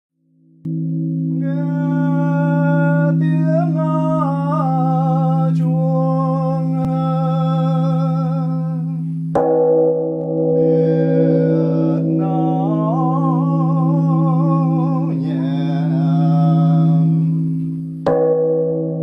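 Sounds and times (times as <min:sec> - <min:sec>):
deep drone: 0:00.3 - 0:19.0
bright ringing tones: 0:00.7 - 0:19.0
monk chanting held notes: 0:01.4 - 0:09.2, 0:10.6 - 0:17.7.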